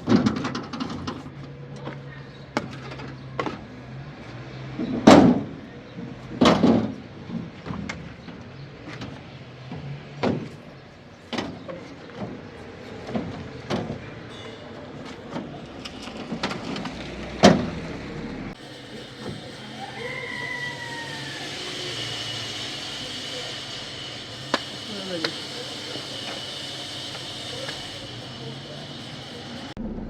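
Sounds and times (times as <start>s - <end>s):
knocks and thuds: 6.3s - 8.4s, 9.0s - 10.6s.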